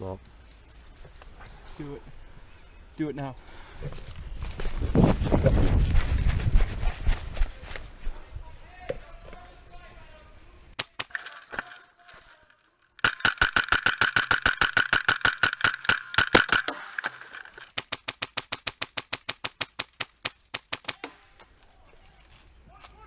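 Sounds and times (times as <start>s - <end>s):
airsoft rifle firing bursts: 13.0s - 19.9s.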